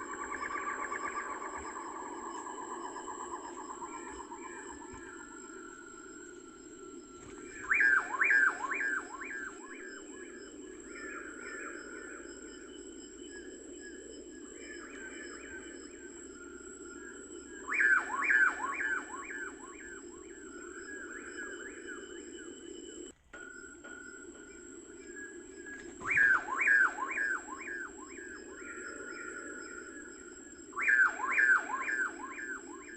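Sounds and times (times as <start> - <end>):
faint chirping: 0.0 - 32.9
bird singing downward notes: 7.2 - 32.9.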